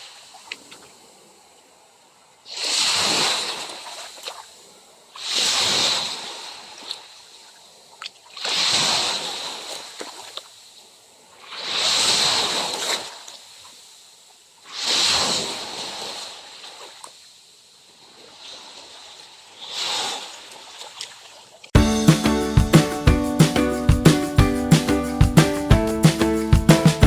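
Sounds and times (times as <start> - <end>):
small waves breaking on beach: 2.5 - 21.5.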